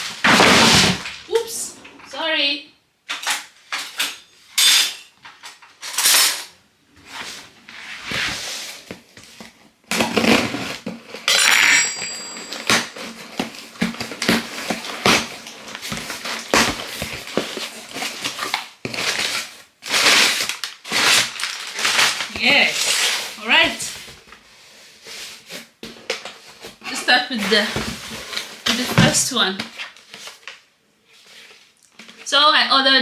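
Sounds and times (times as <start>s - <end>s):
packaging rustling and tearing: 8.1s - 11.3s, 12.6s - 26.8s
small knocks and clinks: 11.3s - 13.3s.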